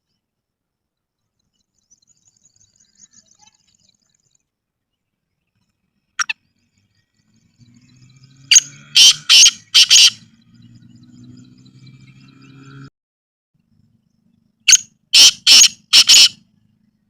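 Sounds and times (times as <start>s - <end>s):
faint high chirps: 0.9s - 12.6s
bird harsh grating calls: 8.2s - 10.3s, 14.7s - 16.4s.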